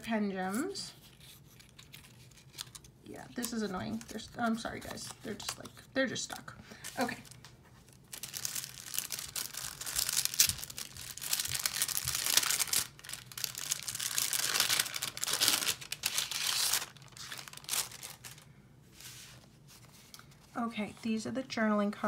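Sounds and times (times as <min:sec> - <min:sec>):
paper rustling and crinkling: 0:00.5 - 0:05.9, 0:06.8 - 0:21.0.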